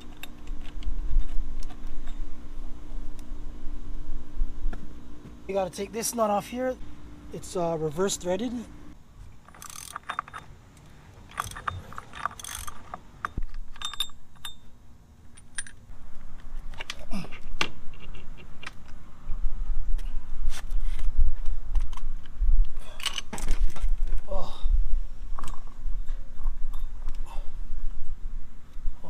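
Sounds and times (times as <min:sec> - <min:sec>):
metal tools clinking and rattling: 0:09.4 - 0:10.6, 0:11.2 - 0:14.7.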